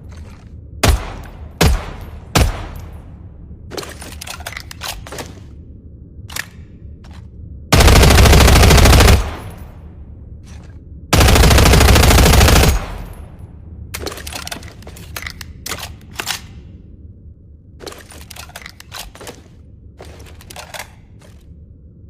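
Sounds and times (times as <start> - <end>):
submachine gun full-auto bursts: 7.8 - 9.4, 11.2 - 13.0.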